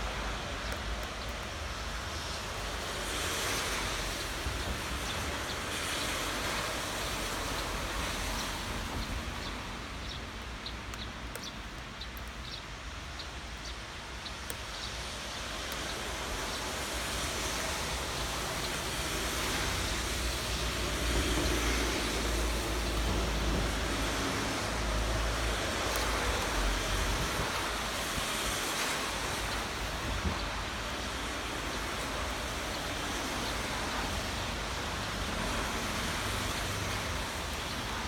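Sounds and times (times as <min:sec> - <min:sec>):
steady rain hiss: 0:00.0 - 0:38.0.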